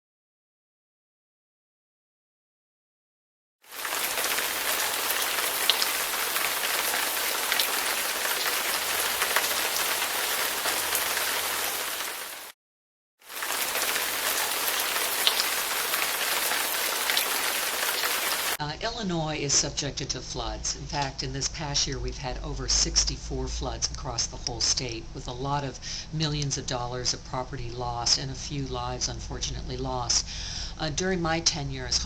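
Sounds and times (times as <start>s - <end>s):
heavy rain falling: 3.7s - 12.6s, 13.3s - 18.6s.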